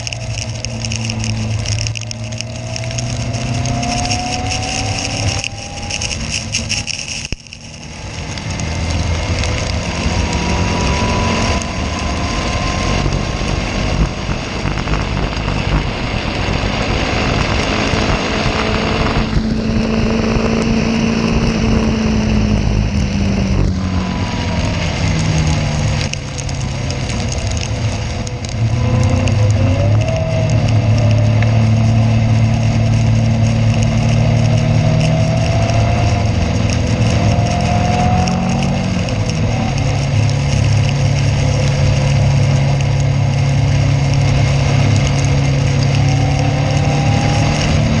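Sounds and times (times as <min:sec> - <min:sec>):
race car engine accelerating: 0:00.0 - 0:48.0
wind and road noise: 0:00.0 - 0:48.0.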